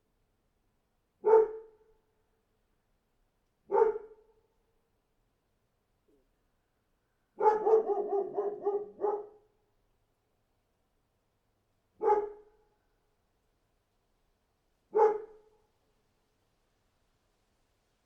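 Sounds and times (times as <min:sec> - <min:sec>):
large dog barking: 0:01.2 - 0:01.8, 0:03.7 - 0:04.3, 0:07.4 - 0:09.5, 0:12.0 - 0:12.6, 0:14.9 - 0:15.5.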